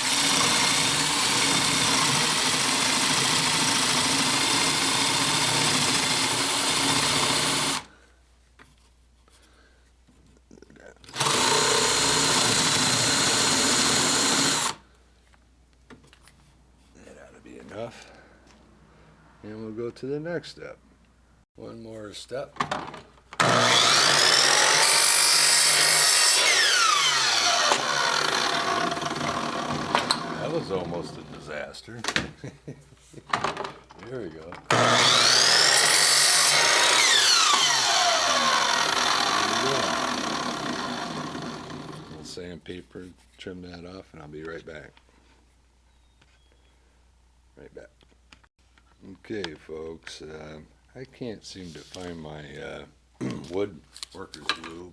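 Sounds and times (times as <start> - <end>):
electric drill boring into wood: 0.0 - 7.9, 11.1 - 14.8, 23.4 - 31.2, 34.7 - 42.3.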